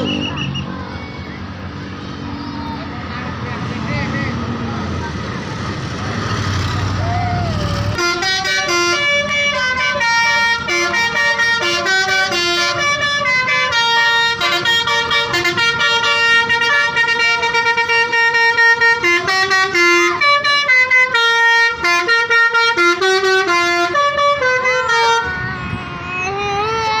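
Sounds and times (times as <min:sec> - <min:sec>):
musical bus horn playing tune: 0:07.5 - 0:27.0.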